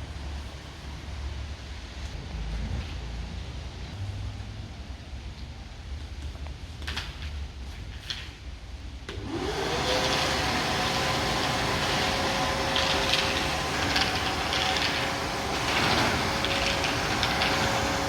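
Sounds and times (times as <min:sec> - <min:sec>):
vacuum cleaner motor running: 0:09.1 - 0:18.0.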